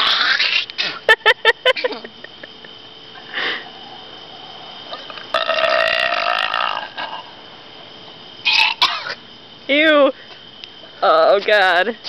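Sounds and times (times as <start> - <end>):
woman burping: 5.3 - 6.9.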